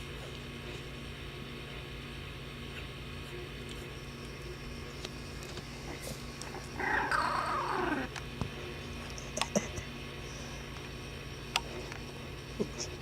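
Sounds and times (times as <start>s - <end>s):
puppy yowling: 6.8s - 8.1s.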